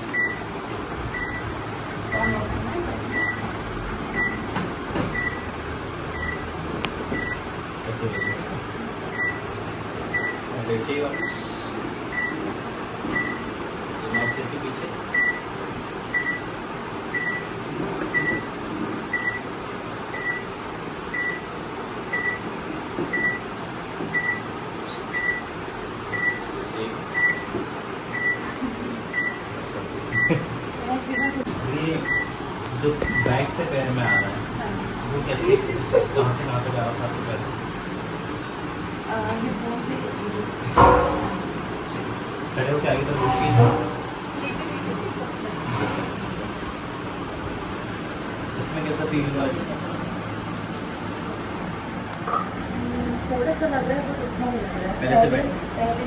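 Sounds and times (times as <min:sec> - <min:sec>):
steady low hum: 0:00.0 - 0:22.4, 0:24.2 - 0:56.0
short electronic beep: 0:43.2 - 0:44.1.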